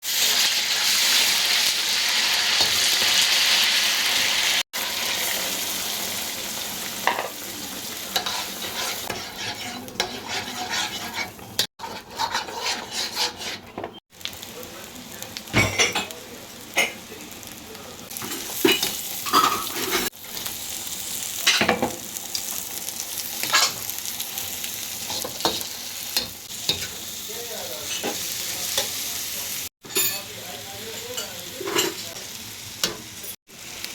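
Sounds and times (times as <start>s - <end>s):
food sizzling in a pan: 0.0s - 33.9s
spatula scraping a pan: 7.9s - 14.0s, 18.2s - 20.5s, 23.2s - 27.0s.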